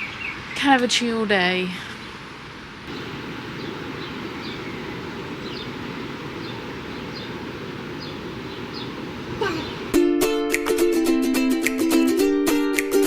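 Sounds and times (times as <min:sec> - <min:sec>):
steady hiss: 0:01.6 - 0:10.9.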